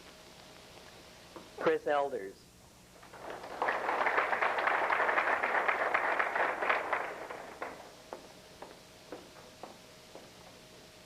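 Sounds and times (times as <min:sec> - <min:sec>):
audience applauding: 0:03.0 - 0:08.3.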